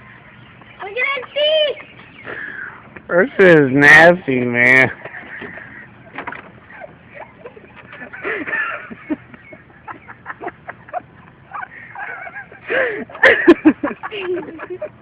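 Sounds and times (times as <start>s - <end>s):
people cackling laughter: 4.9s - 15.0s.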